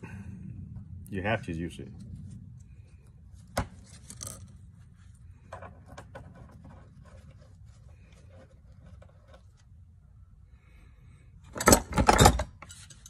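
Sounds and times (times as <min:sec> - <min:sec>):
steady low hum: 0:00.0 - 0:13.0
light scraping and knocks: 0:03.6 - 0:09.7.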